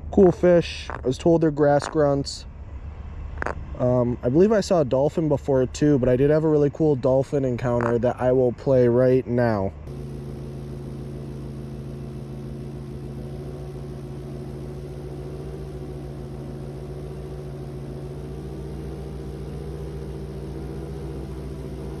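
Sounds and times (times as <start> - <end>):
engine idling: 9.9 - 22.0.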